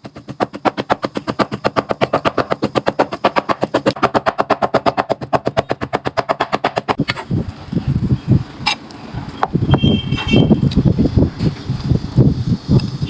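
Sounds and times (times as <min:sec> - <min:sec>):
cleaver mincing meat on board: 0:00.0 - 0:07.0.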